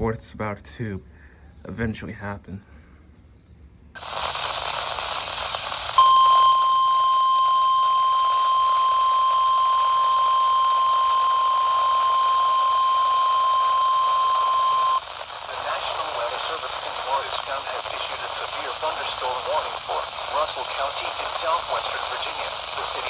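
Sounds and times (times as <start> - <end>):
radio static hiss: 4.0 - 23.0
steady high alarm tone: 5.2 - 15.1.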